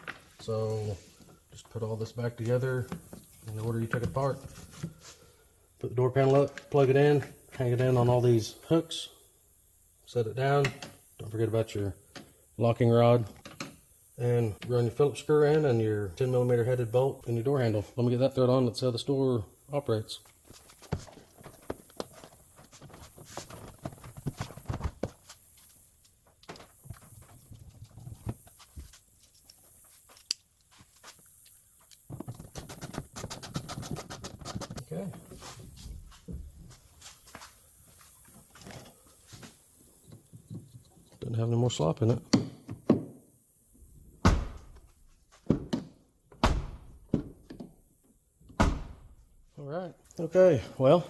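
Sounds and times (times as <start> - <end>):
truck door thunking shut: 44.2 - 44.8, 46.4 - 47.4, 48.5 - 49.2.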